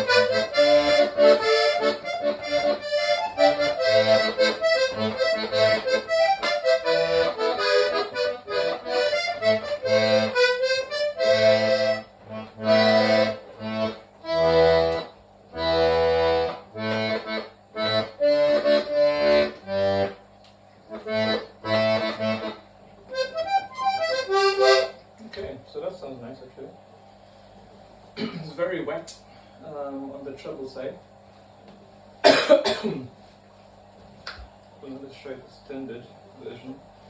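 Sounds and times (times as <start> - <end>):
button accordion playing: 0.0 - 20.2, 20.9 - 25.0.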